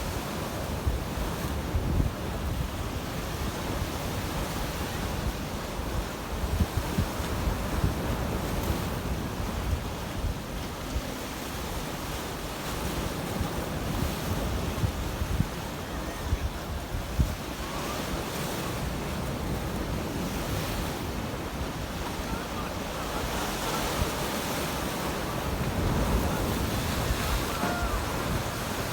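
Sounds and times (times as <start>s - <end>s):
waves washing onto shore: 0.0s - 28.9s
wind gusting on microphone: 0.0s - 28.9s.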